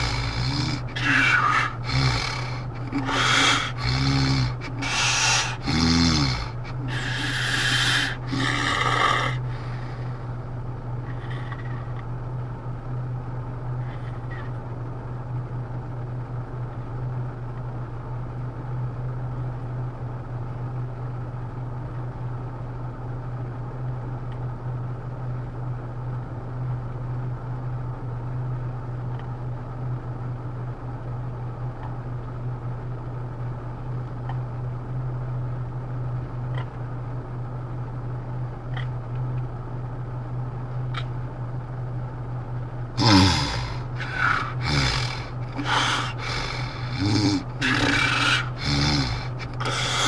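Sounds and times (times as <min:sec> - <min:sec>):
man snoring: 0:00.0 - 0:10.2, 0:43.0 - 0:50.0
steady low hum: 0:00.0 - 0:18.5, 0:33.3 - 0:50.0.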